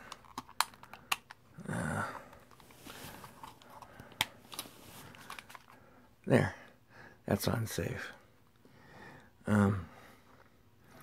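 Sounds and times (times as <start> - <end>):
person mumbling: 1.5 - 2.3, 9.4 - 9.9.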